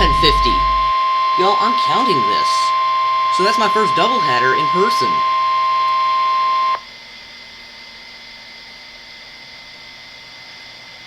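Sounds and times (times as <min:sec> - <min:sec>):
alarm tone from radio speaker: 0:00.0 - 0:06.8
faint receiver hiss: 0:00.0 - 0:06.8.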